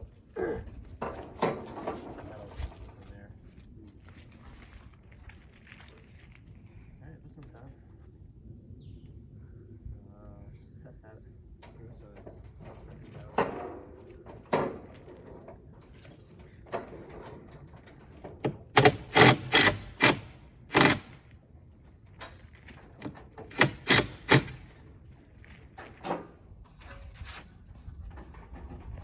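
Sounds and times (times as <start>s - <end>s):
hammer striking nails: 18.4s - 21.1s, 23.0s - 24.6s.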